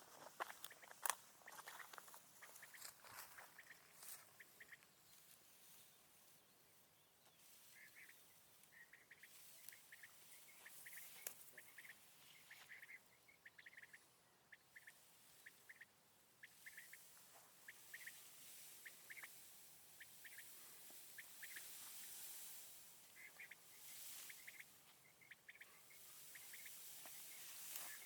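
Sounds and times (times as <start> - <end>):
soft rustles: 0.0 - 6.4, 25.9 - 28.0
quail calls: 0.4 - 4.9, 7.6 - 28.0.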